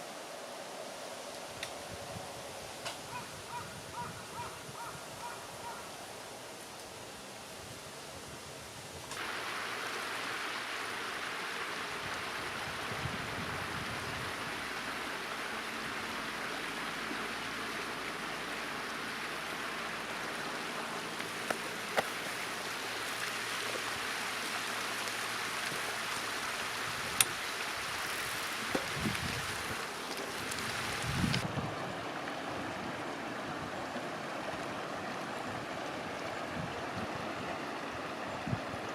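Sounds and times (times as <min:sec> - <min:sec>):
running water rushing: 0:00.0 - 0:38.9.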